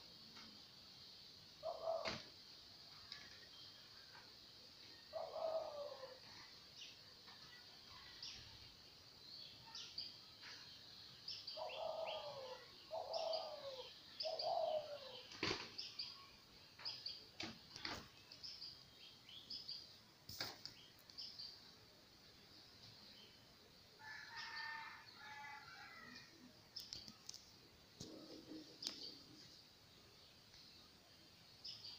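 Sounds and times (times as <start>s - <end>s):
small birds chirping: 0.1s - 31.9s
dove cooing: 1.6s - 2.3s, 5.1s - 6.4s, 11.6s - 15.3s, 28.0s - 29.2s.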